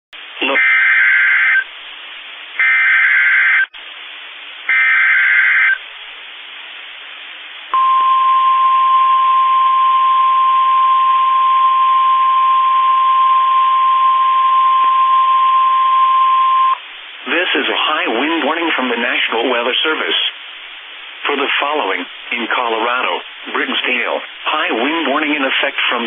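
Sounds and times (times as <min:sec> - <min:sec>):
receiver hiss: 0:00.2 - 0:26.0
steady warning alarm tone: 0:00.6 - 0:01.6, 0:02.6 - 0:03.7, 0:04.7 - 0:05.8, 0:07.8 - 0:16.8.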